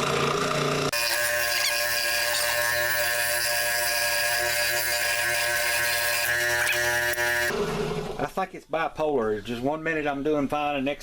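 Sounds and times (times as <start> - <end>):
power saw cutting wood: 0.9 - 7.6.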